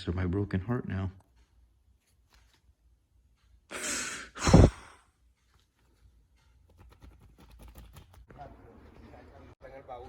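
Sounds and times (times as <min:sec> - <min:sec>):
breath blowing on microphone: 0:03.8 - 0:05.0
man sighing heavily: 0:03.8 - 0:05.0.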